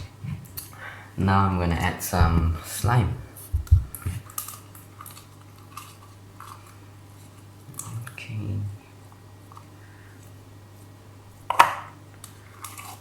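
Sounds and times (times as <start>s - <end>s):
steady low hum: 0.0s - 13.0s
muffled bump: 2.2s - 2.6s, 3.6s - 4.0s.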